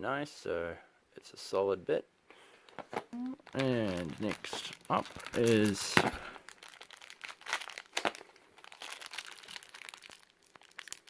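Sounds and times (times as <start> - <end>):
plastic bag crinkling: 3.2 - 11.0.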